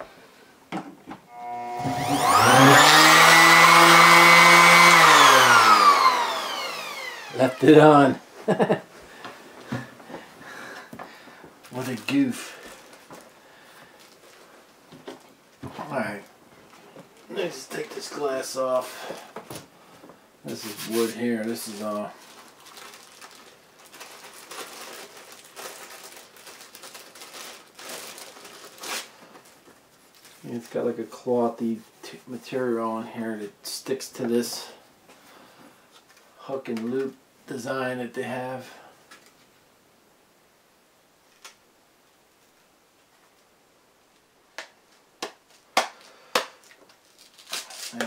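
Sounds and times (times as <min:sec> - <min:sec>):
sanding disc rustling: 0:01.4 - 0:07.8.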